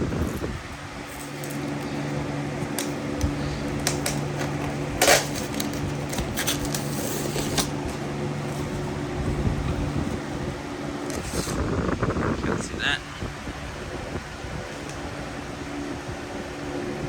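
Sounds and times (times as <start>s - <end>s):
steady low hum: 0.0s - 17.0s
packaging crinkling: 0.1s - 9.0s.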